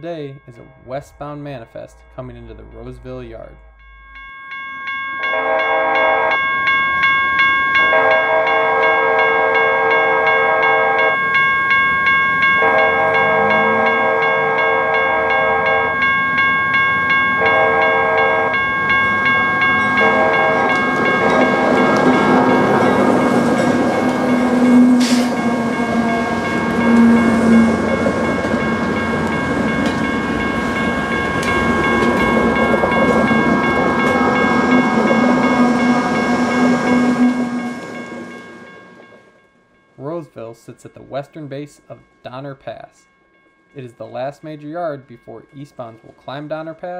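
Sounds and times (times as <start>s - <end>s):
steady high tones: 0.0s - 46.8s
freight train rumbling past: 5.2s - 40.4s
locomotive horn blasts: 12.6s - 15.9s, 20.0s - 23.0s, 24.0s - 28.2s, 33.5s - 37.9s.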